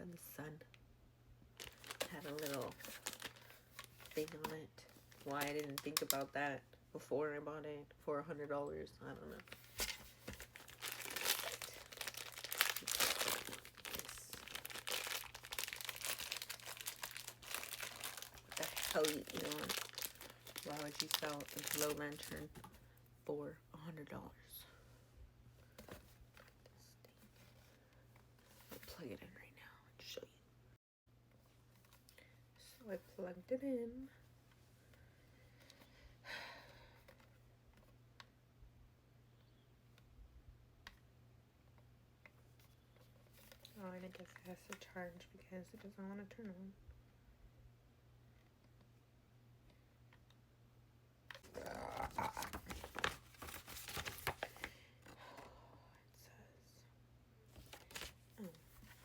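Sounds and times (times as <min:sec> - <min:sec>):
faint steady hum: 0:00.0 - 0:59.0
packaging crinkling and rustling: 0:01.6 - 0:06.4, 0:09.3 - 0:22.6, 0:51.3 - 0:54.8, 0:57.5 - 0:59.0.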